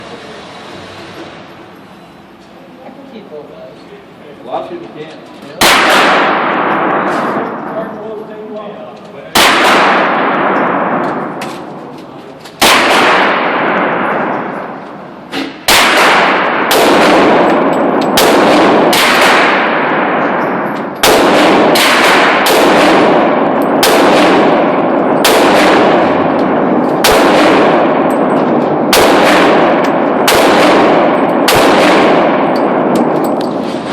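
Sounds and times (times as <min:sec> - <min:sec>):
pistol shots echoing: 0:05.6 - 0:07.9, 0:09.3 - 0:11.8, 0:12.6 - 0:33.6.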